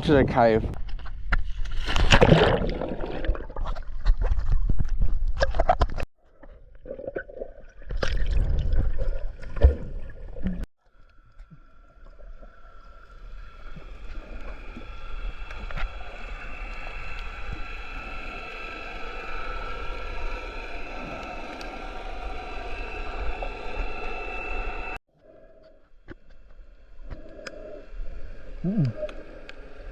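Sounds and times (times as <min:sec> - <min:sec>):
water splashing: 0:01.7 - 0:04.6
muffled underwater ambience: 0:10.5 - 0:29.9
faint high hum: 0:12.0 - 0:25.0.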